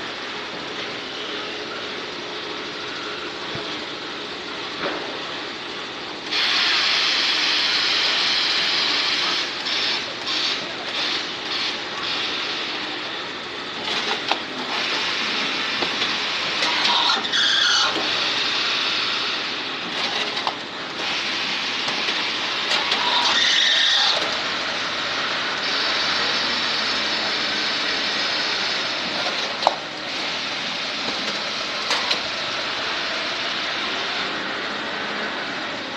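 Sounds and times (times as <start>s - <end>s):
machinery running: 0.0s - 35.9s
high-pitched squealing: 16.6s - 18.3s, 22.8s - 24.4s.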